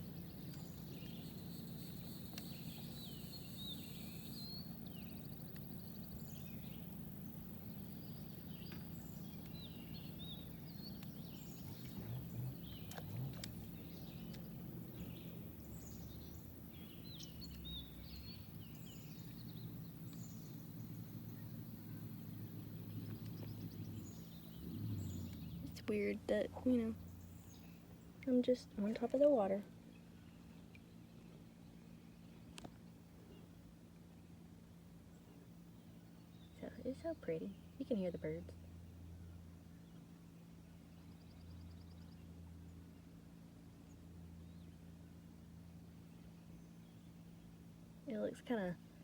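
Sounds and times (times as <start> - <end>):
birds singing and chirping: 0.0 - 28.4
steady low rumble: 0.0 - 28.9.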